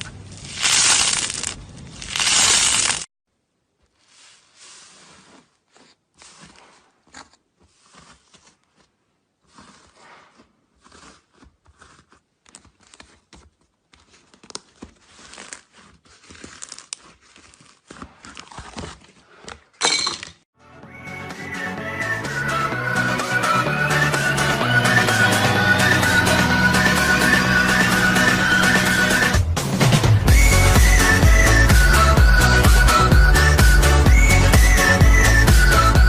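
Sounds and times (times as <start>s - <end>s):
slime crackling and popping: 0.4s - 3.1s, 14.1s - 18.9s.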